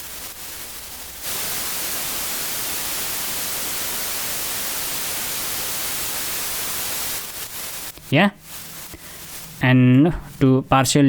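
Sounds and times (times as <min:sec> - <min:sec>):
white noise hiss: 0:00.0 - 0:11.0.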